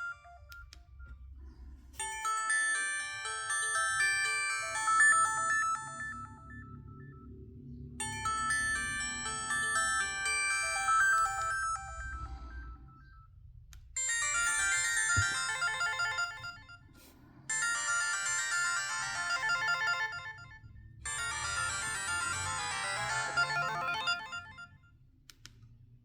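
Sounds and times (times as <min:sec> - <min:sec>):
mobile phone ringtones: 0:02.2 - 0:07.3, 0:08.0 - 0:12.8, 0:14.0 - 0:16.9, 0:17.5 - 0:24.8
synthesized melody phrases: 0:02.8 - 0:12.8, 0:17.8 - 0:24.6.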